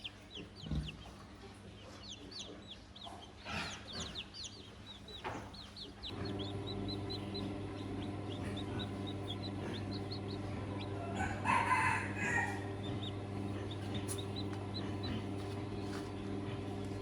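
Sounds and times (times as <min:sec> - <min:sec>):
steady low hum: 0:06.1 - 0:17.0
rooster crowing: 0:10.3 - 0:13.2.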